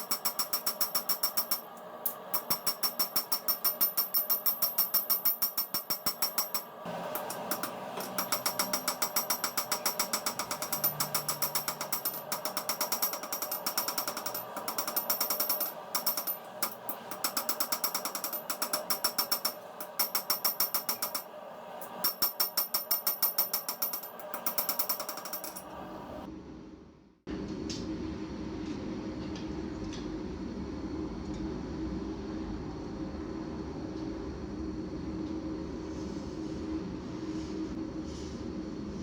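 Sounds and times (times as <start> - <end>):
power hammer striking steel: 0.0 - 26.3.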